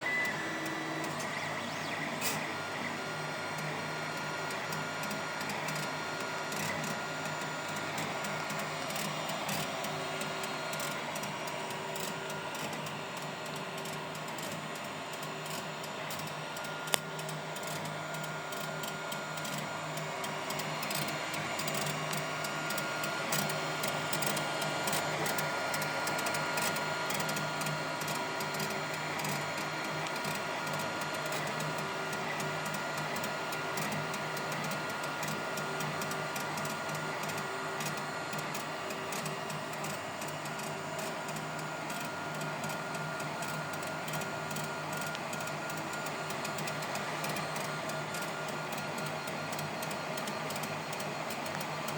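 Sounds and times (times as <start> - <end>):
stepper motors whining: 0.0 - 5.8
printer whirring: 0.0 - 51.9.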